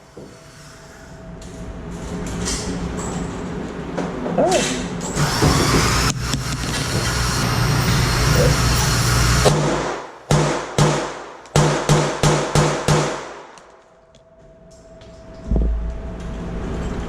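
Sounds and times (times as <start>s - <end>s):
target carrier whirring: 5.0s - 10.2s.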